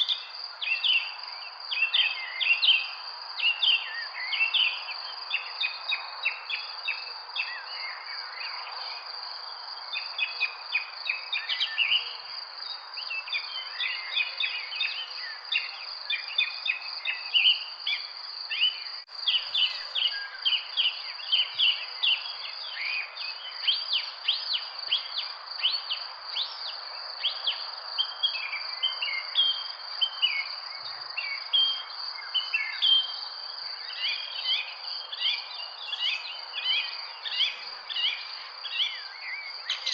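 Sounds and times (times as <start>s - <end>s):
birds chirping: 18.6s - 21.6s
high-pitched insect drone: 19.1s - 20.4s.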